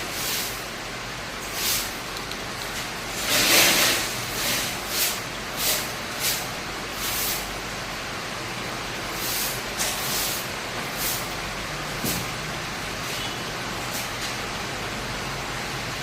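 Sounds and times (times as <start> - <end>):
hissing air bursts: 1.4 - 2.1.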